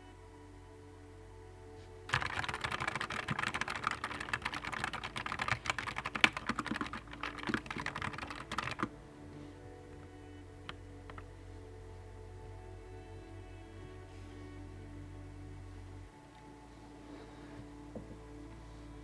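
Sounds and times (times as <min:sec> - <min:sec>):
mechanical keyboard typing: 0:02.1 - 0:08.9.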